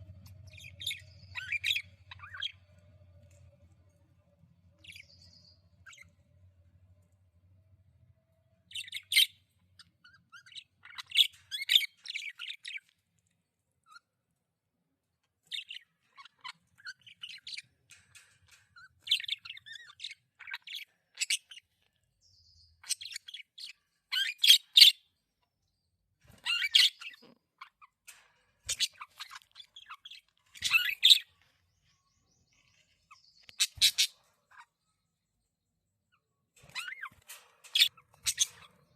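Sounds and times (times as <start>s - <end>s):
budgerigars chirping: 0.3s - 2.6s, 28.7s - 31.3s, 33.4s - 34.6s.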